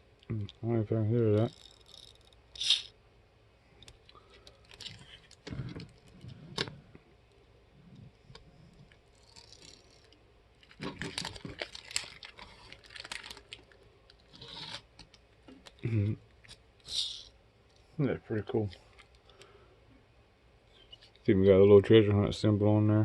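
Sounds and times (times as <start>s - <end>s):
wrapper crinkling: 4.4s - 6.2s, 9.2s - 15.8s.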